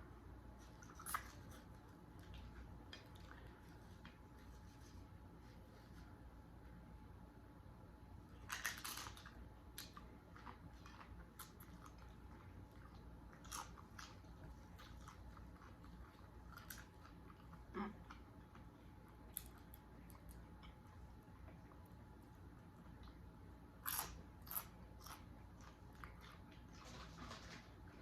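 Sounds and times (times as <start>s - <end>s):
quiet chewing: 0.3s - 6.2s, 8.2s - 28.0s
tortilla chips crunching: 8.4s - 17.6s, 23.8s - 27.5s.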